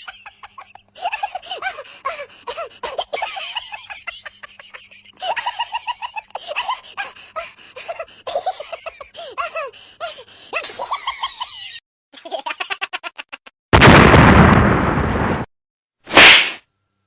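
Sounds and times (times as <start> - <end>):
high-pitched cartoon cackle: 0.0 - 7.2, 10.6 - 13.5.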